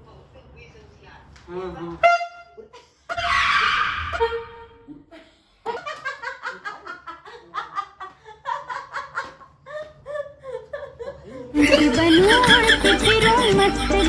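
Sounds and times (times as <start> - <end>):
hearty laughter: 4.2 - 14.0.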